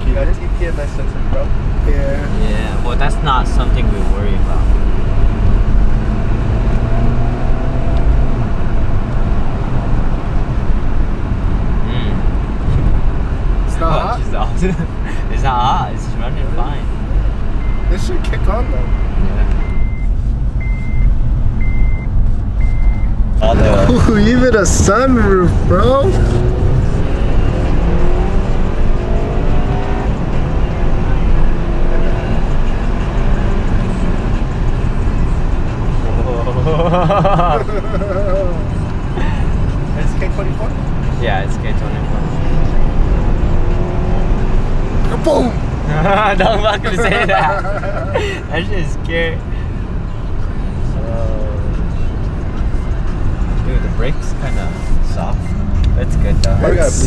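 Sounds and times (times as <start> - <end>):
car engine from inside cabin: 0.0 - 14.1, 16.4 - 36.6, 51.6 - 57.0
road and tyre rumble: 0.0 - 57.0.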